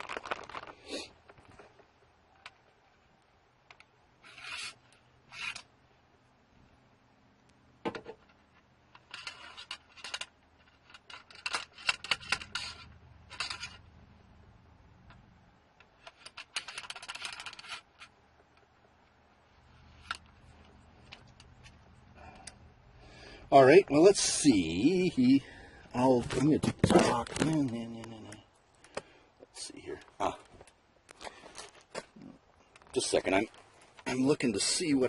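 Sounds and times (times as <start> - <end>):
rustling and scraping: 0.0 - 2.7, 4.2 - 5.7, 7.9 - 14.0, 15.8 - 22.6, 23.9 - 34.8.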